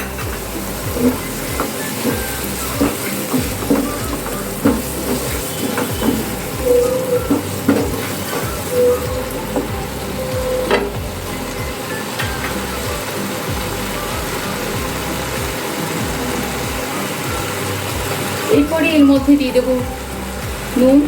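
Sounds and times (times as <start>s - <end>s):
spatula scraping a pan: 0.0s - 9.8s
paste sizzling in hot oil: 0.0s - 21.0s.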